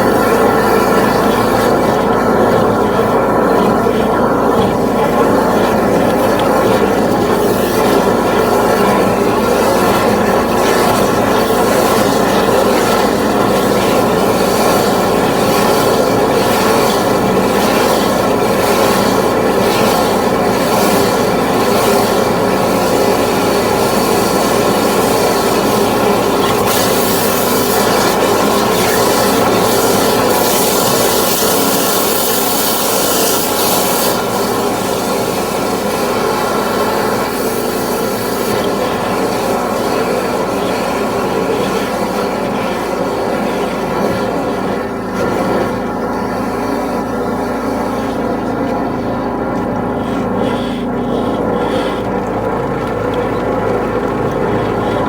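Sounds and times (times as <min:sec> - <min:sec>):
drain jetting machine humming: 0:00.0 - 0:55.0
water hiss: 0:20.7 - 0:42.2.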